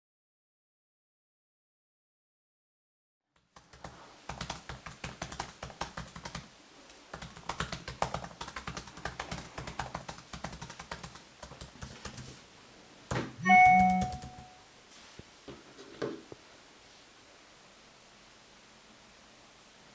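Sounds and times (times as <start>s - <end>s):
rapid typing on computer keyboard: 3.6s - 6.5s, 7.1s - 12.4s, 13.4s - 14.5s
brief loud pitched tone: 13.4s - 14.6s.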